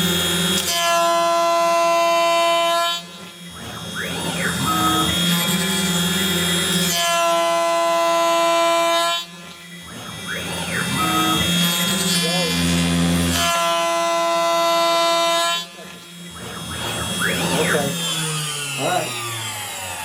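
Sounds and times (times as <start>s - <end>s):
cnc router whining: 0.0s - 20.0s
sweeping whir: 9.3s - 13.6s, 14.2s - 20.0s.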